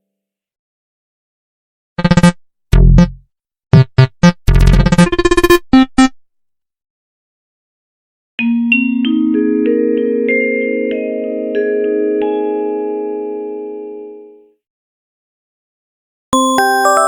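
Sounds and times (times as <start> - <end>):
chiming ringtone: 16.4 - 17.0
electronic ringtone notes: 16.4 - 17.0.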